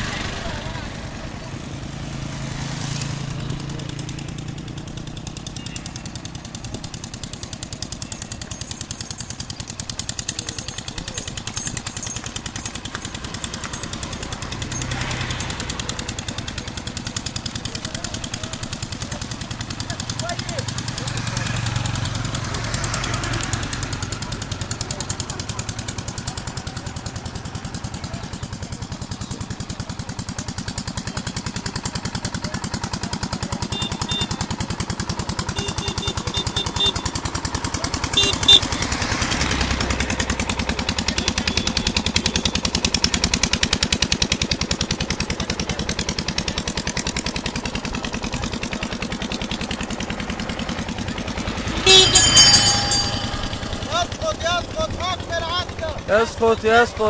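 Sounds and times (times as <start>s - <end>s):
engine running with pulsing throb: 0.0s - 57.0s
short high beeps: 51.8s - 54.0s.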